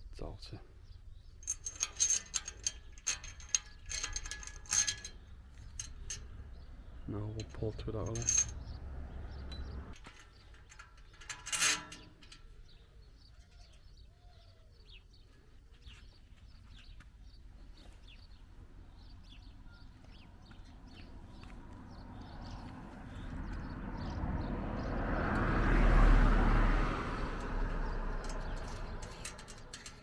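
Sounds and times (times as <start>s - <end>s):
small birds chirping: 0.0s - 25.0s
short clatters: 1.4s - 14.5s, 25.3s - 30.0s.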